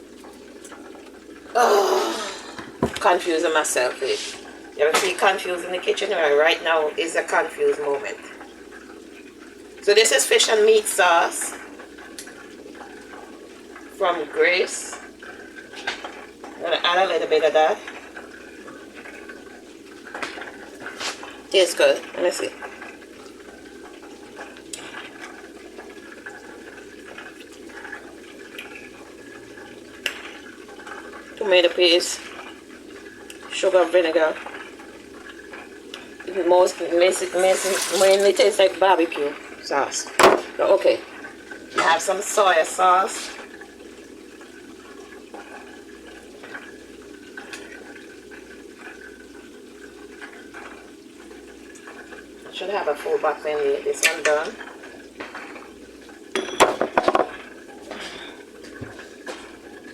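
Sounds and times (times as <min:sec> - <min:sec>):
oil crackling and popping: 0:00.0 - 0:01.6, 0:11.4 - 0:14.0, 0:17.8 - 0:31.5, 0:32.3 - 0:33.5
food sizzling in a pan: 0:00.0 - 0:50.0.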